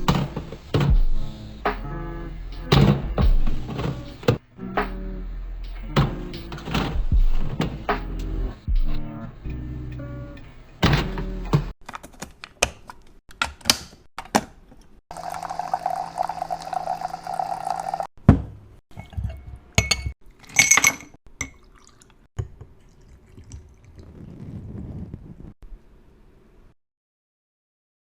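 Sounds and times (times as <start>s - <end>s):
liquid pouring: 15.1s - 18.1s, 21.4s - 24.4s
glassware clinking: 18.9s - 22.0s.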